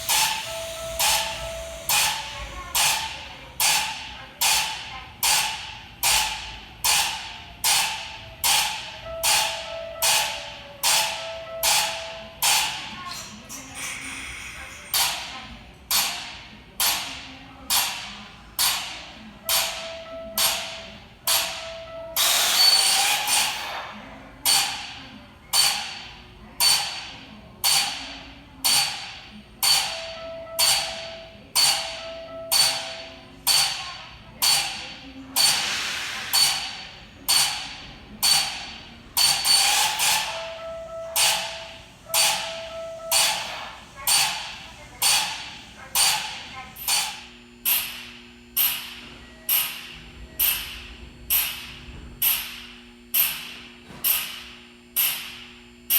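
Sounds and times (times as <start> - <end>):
train air equipment hissing: 0.0 - 15.3, 22.2 - 25.0, 33.5 - 47.3.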